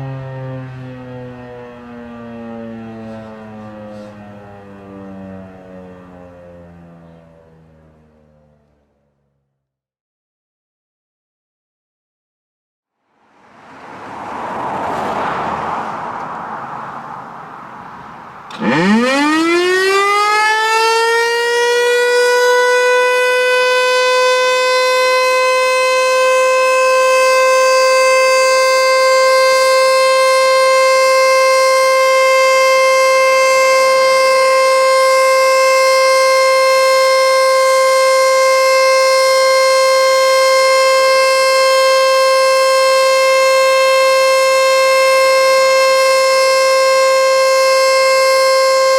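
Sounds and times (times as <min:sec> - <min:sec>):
outdoor warning siren: 0:00.0 - 0:09.8, 0:13.0 - 0:48.9
rushing noise: 0:13.0 - 0:18.9.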